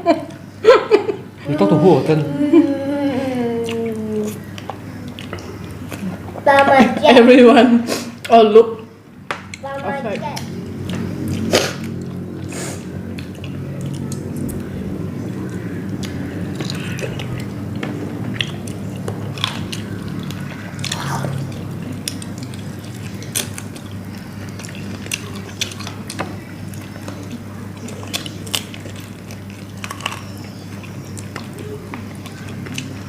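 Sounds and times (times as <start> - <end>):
steady low hum: 0.0 - 33.0
biting and chewing chicken wings: 10.4 - 33.0.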